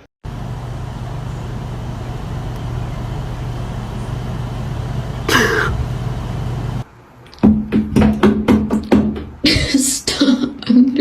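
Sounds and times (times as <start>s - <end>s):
vehicle running hum: 0.3s - 6.9s.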